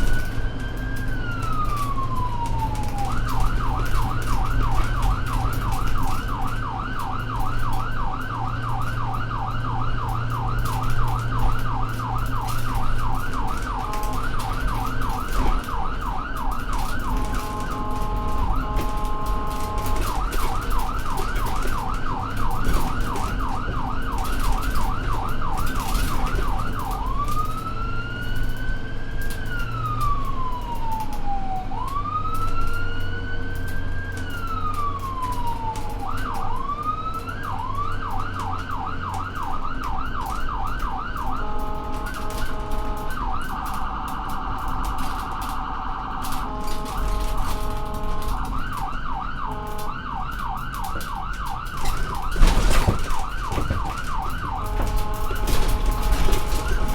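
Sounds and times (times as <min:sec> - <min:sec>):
ambulance siren: 0:00.0 - 0:56.9
engine and road rumble: 0:00.0 - 0:56.9.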